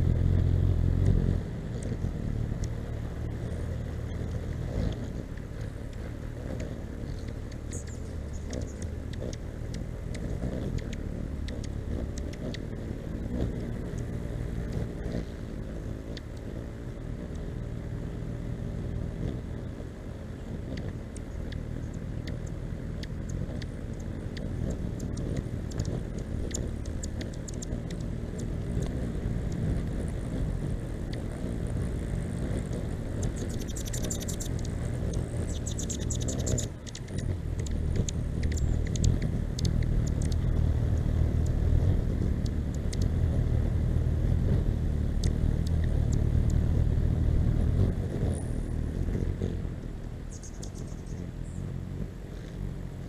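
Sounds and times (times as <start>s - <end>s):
hummingbird wings humming: 0.0s - 53.0s
bird chip calls: 5.9s - 12.7s, 33.1s - 40.4s, 50.3s - 51.6s
high-pitched bird chittering: 6.6s - 12.7s, 24.3s - 28.5s, 33.1s - 40.4s, 50.3s - 51.6s.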